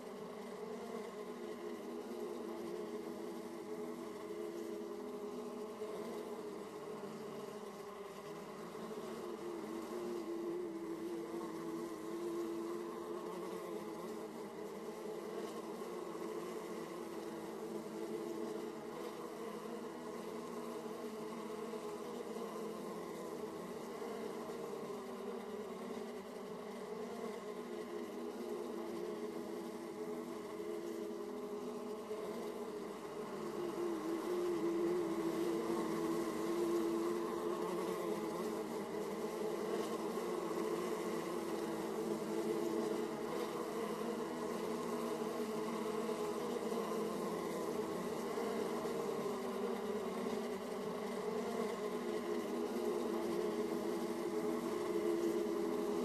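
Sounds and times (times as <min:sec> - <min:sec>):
bees buzzing: 0:00.3 - 0:56.0.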